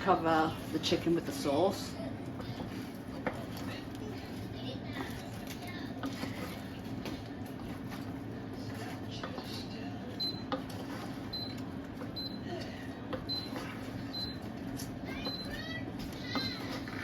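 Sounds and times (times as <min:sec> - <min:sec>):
spoon scraping in a pan: 0:02.5 - 0:11.7.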